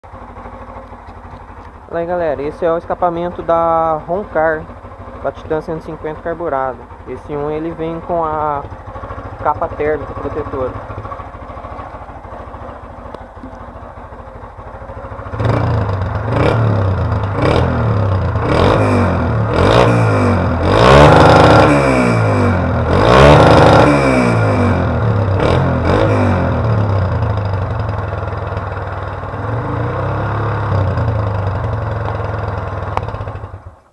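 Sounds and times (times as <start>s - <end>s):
motorcycle engine revving: 0.0s - 33.9s
exhaust popping cracks: 0.6s - 27.0s.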